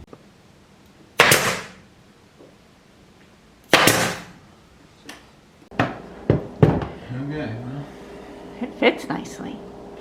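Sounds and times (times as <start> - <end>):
nail gun firing: 1.2 - 1.8, 3.7 - 4.4.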